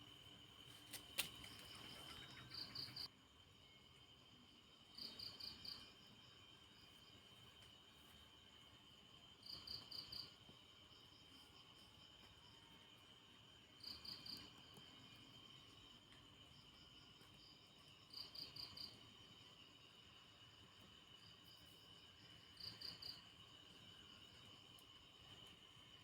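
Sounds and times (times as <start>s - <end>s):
crickets trilling: 0.0s - 26.0s
short insect chirp: 0.1s - 7.2s.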